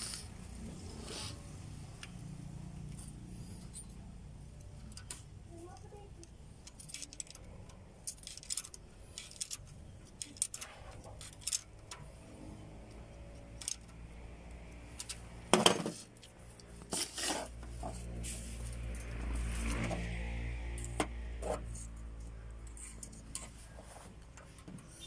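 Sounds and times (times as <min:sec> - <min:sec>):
metal tools clinking on engine parts: 0:06.6 - 0:12.3.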